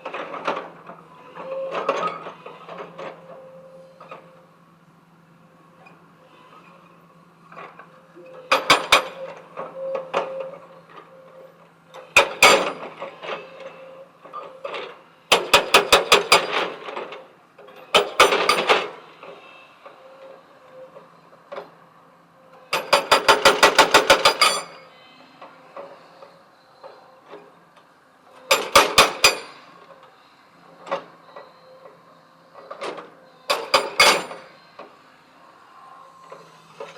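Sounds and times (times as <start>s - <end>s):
hydraulic breaker hammering stone: 12.2s - 12.9s, 15.3s - 16.8s, 17.9s - 18.9s, 22.7s - 24.7s, 28.5s - 29.6s, 33.5s - 34.5s.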